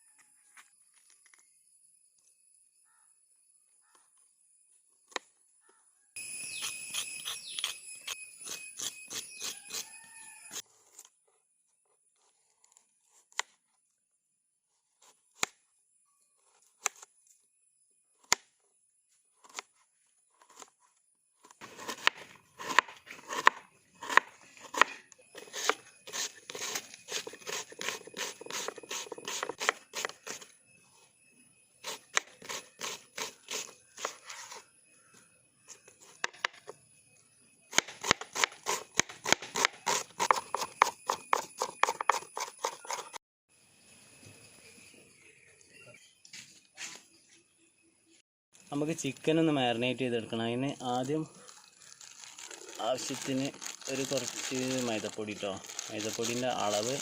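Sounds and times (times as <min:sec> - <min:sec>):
utensil strikes and scrapes: 0:06.4 - 0:10.6, 0:21.7 - 0:30.5, 0:37.8 - 0:43.2.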